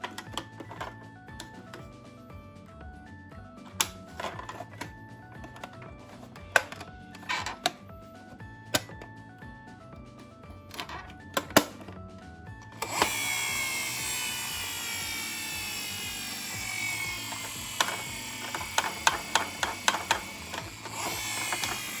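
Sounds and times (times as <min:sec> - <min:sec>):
toy car motor whirring: 0:12.8 - 0:22.0.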